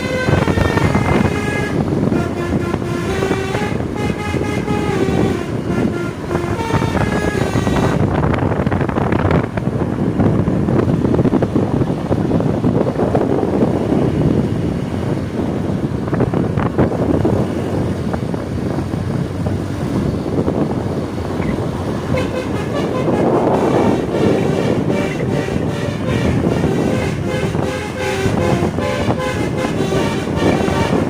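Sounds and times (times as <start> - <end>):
bus horn tones: 0.0 - 8.4, 21.4 - 31.0
heavy vehicle passing: 0.0 - 31.0.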